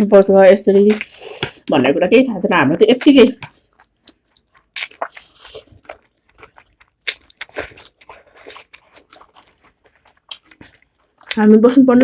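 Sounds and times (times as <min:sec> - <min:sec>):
chewing and biting: 0:03.0 - 0:11.4.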